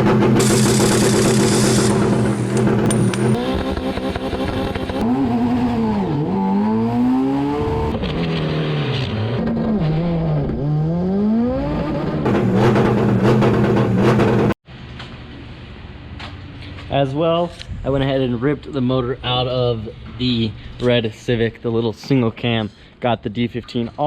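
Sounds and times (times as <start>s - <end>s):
car engine running: 0.0s - 5.4s.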